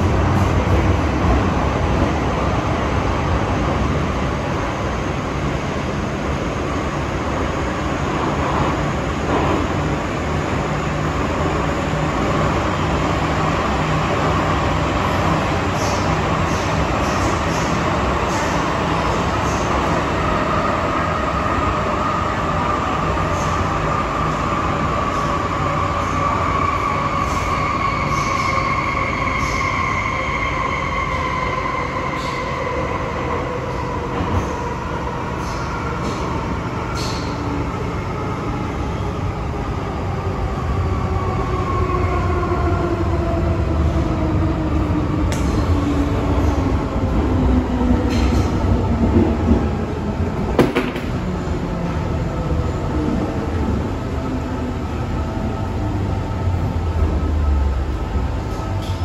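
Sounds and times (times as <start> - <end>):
wheels rumbling on rail: 31.1 - 59.0.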